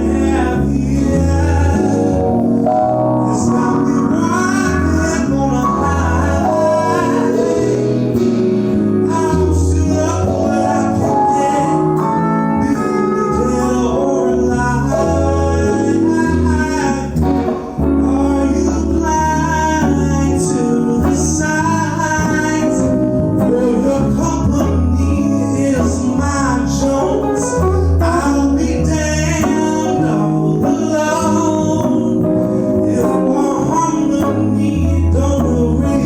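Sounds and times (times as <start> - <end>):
guitar accompaniment: 0.0 - 36.0
person singing: 0.0 - 36.0
steady bass line: 0.0 - 36.0.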